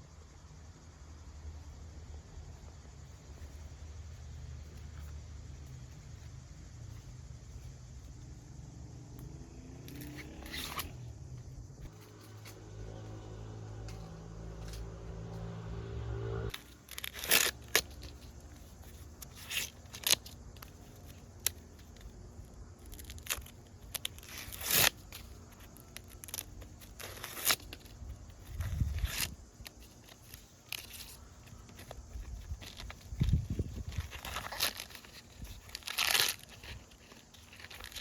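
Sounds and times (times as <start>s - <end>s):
low steady hum: 0.0s - 38.0s
faint rising tone: 8.6s - 16.6s
sharp tearing sounds: 9.9s - 11.0s, 16.5s - 22.1s, 22.8s - 38.0s.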